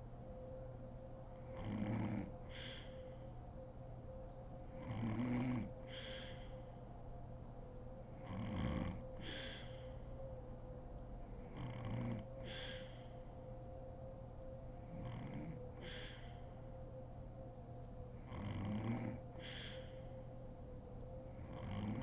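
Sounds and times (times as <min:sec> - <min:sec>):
faint steady hum: 0:00.0 - 0:22.0
woman snoring: 0:01.6 - 0:02.3, 0:04.8 - 0:05.7, 0:08.2 - 0:09.4, 0:11.5 - 0:12.2, 0:14.9 - 0:15.6, 0:18.3 - 0:19.2, 0:21.5 - 0:22.0
breathy exhale: 0:02.4 - 0:03.3, 0:05.8 - 0:06.8, 0:09.2 - 0:10.1, 0:12.4 - 0:13.3, 0:15.4 - 0:16.6, 0:19.4 - 0:20.2.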